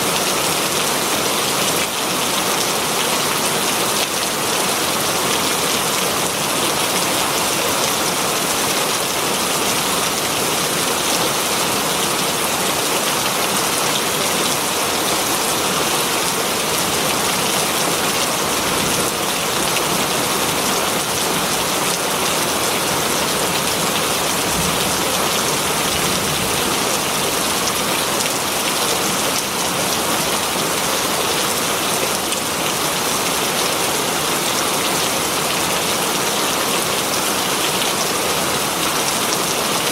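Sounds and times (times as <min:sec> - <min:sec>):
heavy rain on leaves: 0:00.0 - 0:39.9.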